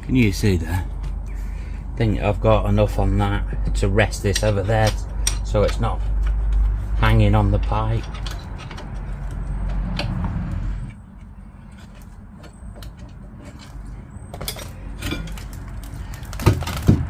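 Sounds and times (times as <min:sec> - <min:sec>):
low steady rumble: 0:00.0 - 0:16.2
metal tools clinking: 0:07.0 - 0:09.4, 0:11.6 - 0:15.7.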